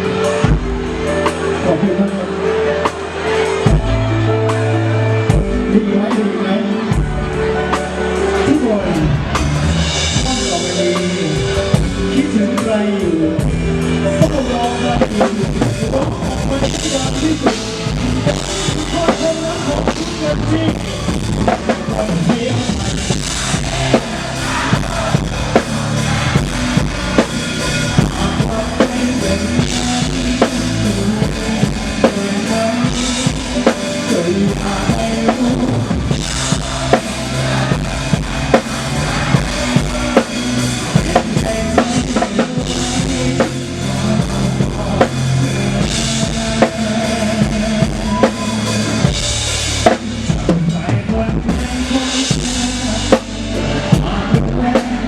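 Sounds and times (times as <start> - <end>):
band playing instrumental: 0.0 - 55.0
drum kit beat: 0.0 - 55.0.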